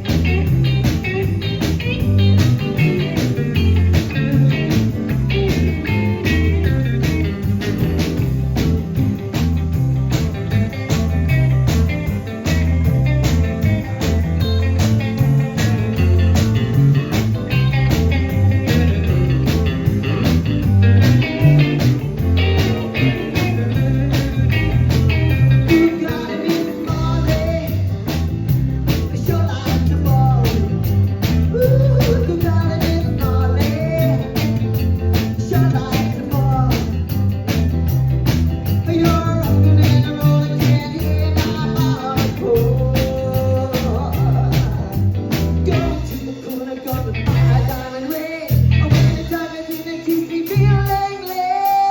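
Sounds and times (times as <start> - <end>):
steady drum beat: 0.0 - 51.8
rock and roll band playing: 0.0 - 51.9
person singing: 21.3 - 28.3, 28.9 - 37.1, 38.8 - 51.9.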